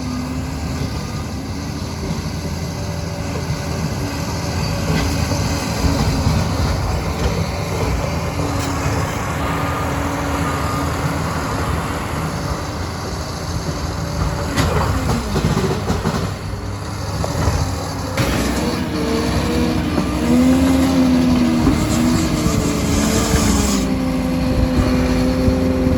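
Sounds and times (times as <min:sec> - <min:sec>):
diesel engine droning: 0:00.0 - 0:25.9
steel tracks clattering: 0:00.0 - 0:25.9
clanks and squeaks: 0:03.3 - 0:09.1.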